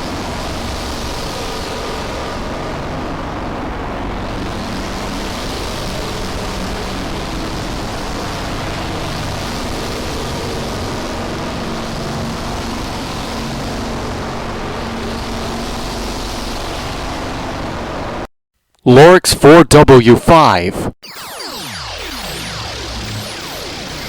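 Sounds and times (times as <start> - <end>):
low hum: 21.1 - 24.0.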